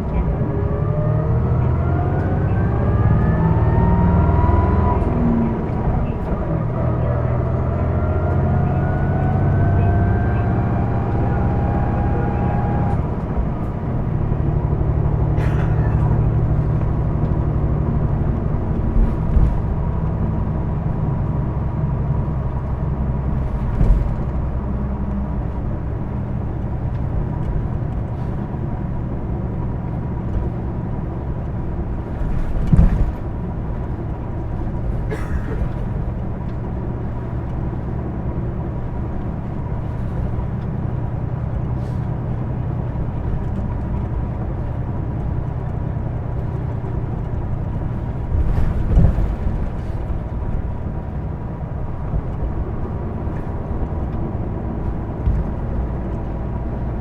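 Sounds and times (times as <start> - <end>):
rising whine of acceleration: 0.0 - 15.2
bus diesel engine running: 0.0 - 57.0.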